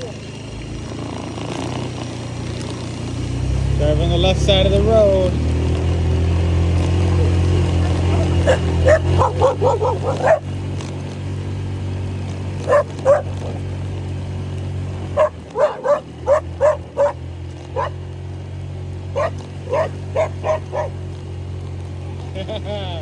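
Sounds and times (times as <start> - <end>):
scooter engine humming: 0.0 - 23.0
dogs barking: 5.7 - 21.6.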